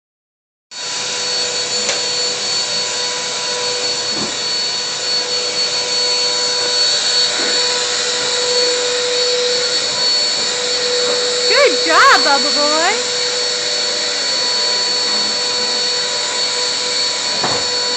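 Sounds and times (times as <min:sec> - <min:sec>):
vacuum cleaner running: 0:00.7 - 0:17.9.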